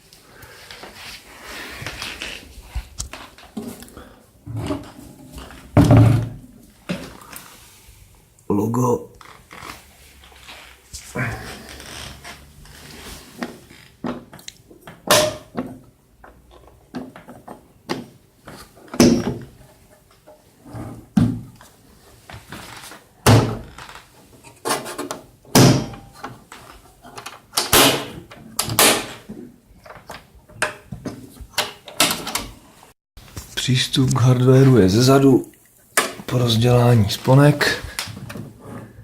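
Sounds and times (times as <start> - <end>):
metal cabinet clunks and knocks: 5.7 - 6.5.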